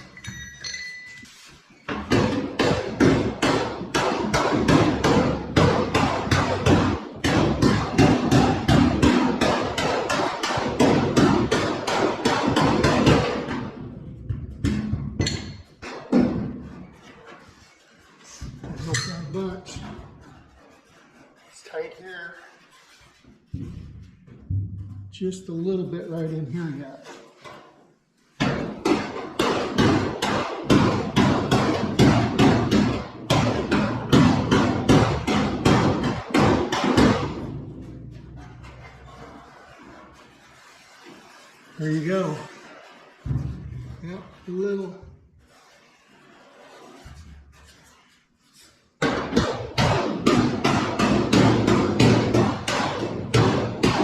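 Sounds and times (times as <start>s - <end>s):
hammer tapping on sheet metal: 1.9s - 16.8s, 28.4s - 40.3s, 49.0s - 54.0s.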